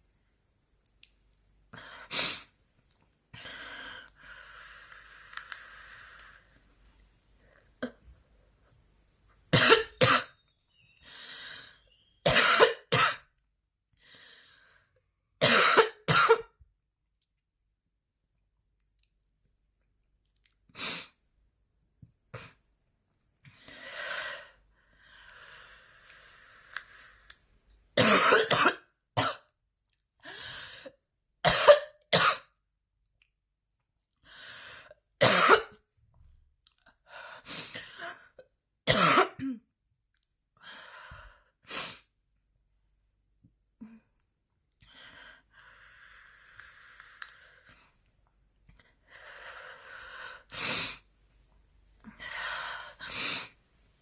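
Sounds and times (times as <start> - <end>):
woman coughing harshly: 9.6 - 10.3, 12.3 - 13.3, 15.4 - 16.6, 28.0 - 29.4, 31.4 - 32.5, 35.2 - 35.8, 38.9 - 39.6.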